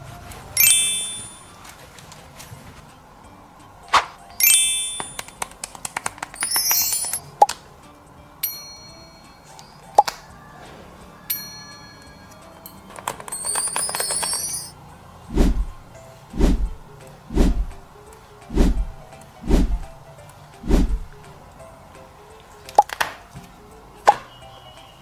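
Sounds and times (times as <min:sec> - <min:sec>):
high sparkling shimmer: 0:00.6 - 0:01.6, 0:04.4 - 0:05.2, 0:06.5 - 0:07.3, 0:13.4 - 0:14.8
soft deep thuds: 0:15.3 - 0:21.3.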